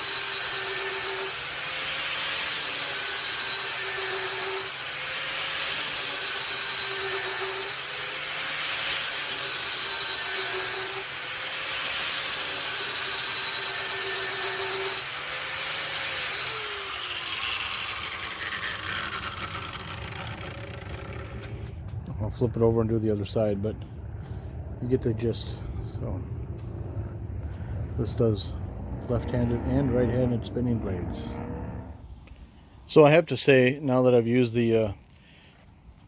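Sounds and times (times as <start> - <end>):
angle grinder grinding steel: 0.0 - 21.9, 28.0 - 32.0
grinder spinning down: 0.0 - 21.9, 25.4 - 32.0.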